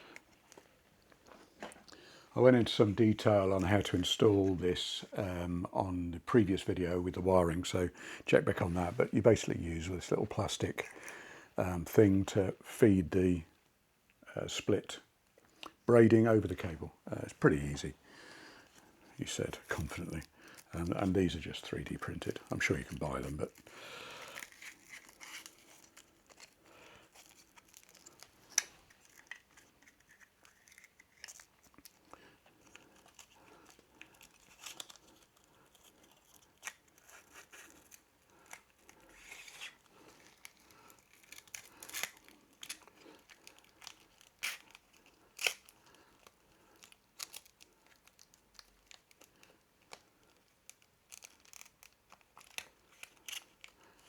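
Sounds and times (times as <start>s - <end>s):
cable sleeving rustling and scraping: 24.3s - 54.0s.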